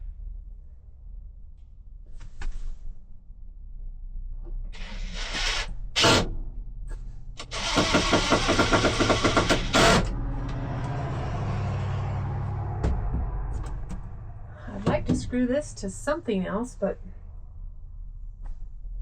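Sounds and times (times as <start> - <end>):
cordless drill driving screws: 7.4 - 10.1.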